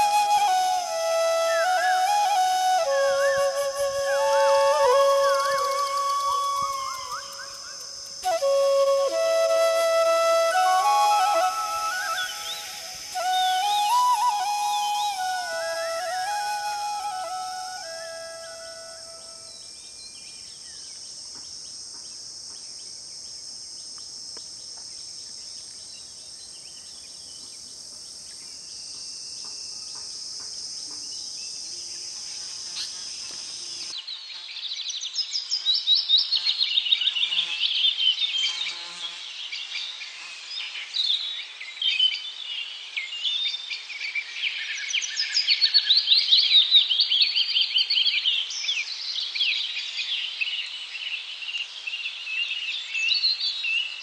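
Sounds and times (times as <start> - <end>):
high-pitched insect drone: 0.0 - 19.8, 28.6 - 33.9.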